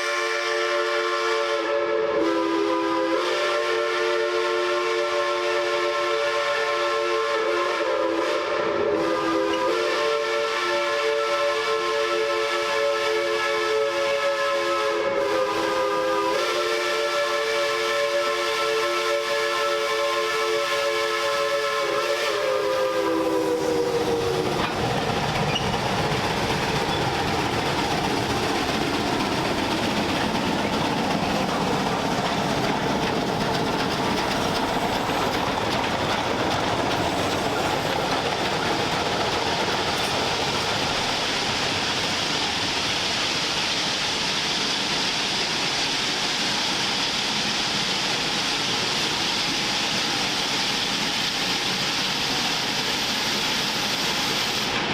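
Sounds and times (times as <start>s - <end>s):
steam whistle chord: 0.0s - 24.6s
locomotive and train running: 0.0s - 54.9s.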